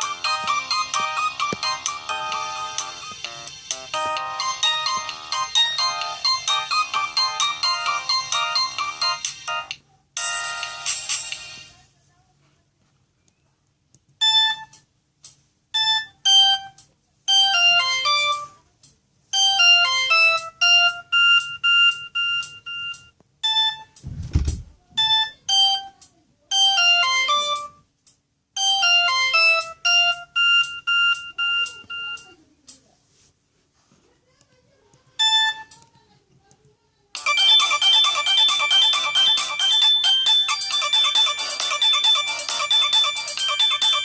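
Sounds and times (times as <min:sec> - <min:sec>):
mobile phone ringtone beeping melody: 0:00.0 - 0:11.6, 0:15.8 - 0:18.6, 0:19.4 - 0:24.0, 0:25.0 - 0:27.8, 0:28.6 - 0:32.4, 0:37.2 - 0:44.0
low thump: 0:24.0 - 0:24.8.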